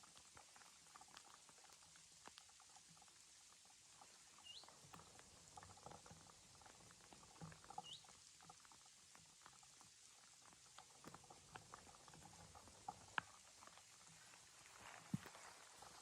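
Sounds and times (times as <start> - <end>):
faint crackles and ticks: 0.0 - 16.0
soft hiss: 12.7 - 16.0.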